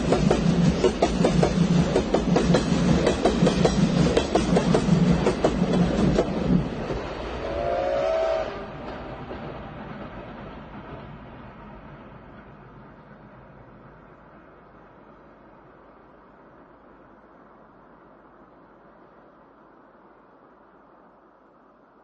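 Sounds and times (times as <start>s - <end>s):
train wheels clattering on rails: 0.0s - 7.2s, 8.5s - 12.8s
train rumble: 0.0s - 22.0s
steam whistle toot: 7.4s - 8.8s.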